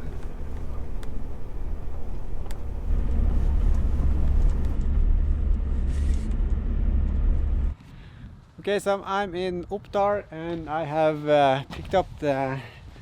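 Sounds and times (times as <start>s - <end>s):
diesel engine rumble: 0.0s - 8.5s
road noise: 0.0s - 8.6s.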